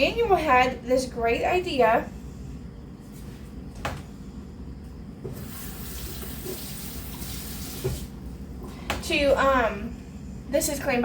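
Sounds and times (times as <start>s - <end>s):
faucet running into sink: 5.4s - 8.1s.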